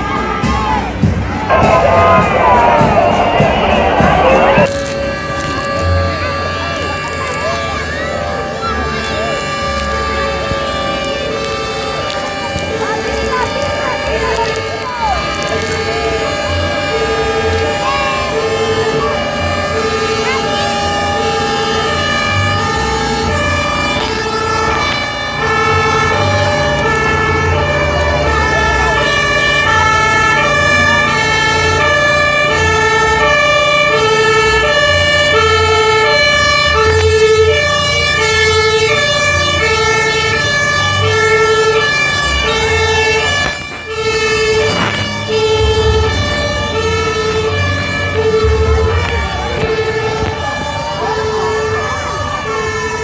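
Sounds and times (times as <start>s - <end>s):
electronic music with bass beat: 1.4s - 5.8s.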